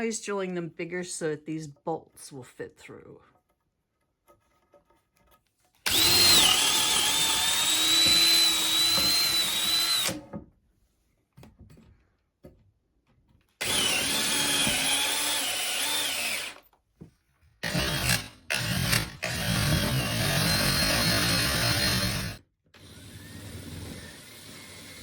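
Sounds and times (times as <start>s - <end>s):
power drill whining: 5.8s - 10.2s, 13.6s - 16.7s, 17.6s - 25.0s.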